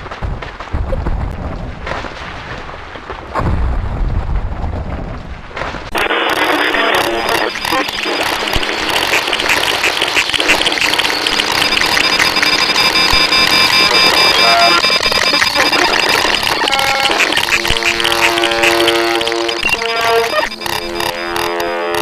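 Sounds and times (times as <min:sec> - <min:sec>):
low rumbling noise: 0:00.0 - 0:06.1.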